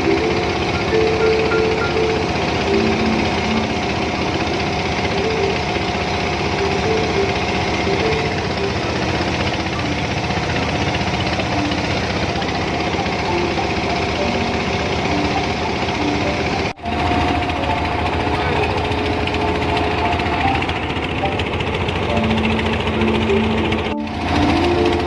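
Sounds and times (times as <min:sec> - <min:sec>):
boat engine running: 0:00.0 - 0:25.0.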